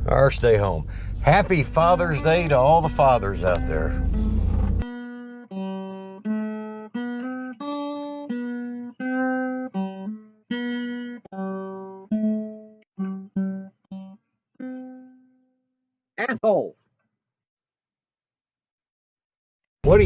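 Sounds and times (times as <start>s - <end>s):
acoustic guitar plucked melody: 1.2s - 15.6s.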